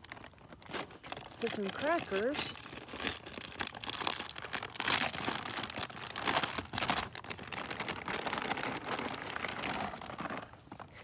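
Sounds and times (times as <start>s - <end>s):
crackers crinkling and crunching: 0.0s - 11.0s.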